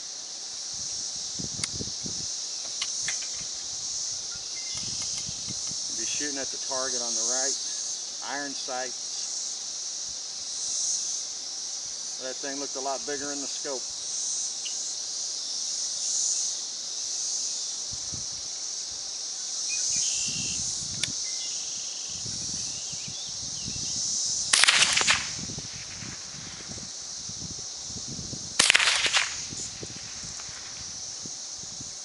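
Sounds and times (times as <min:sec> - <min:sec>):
high buzz of insects: 0:00.0 - 0:32.0
rifle shots: 0:24.5 - 0:25.4, 0:28.6 - 0:29.5.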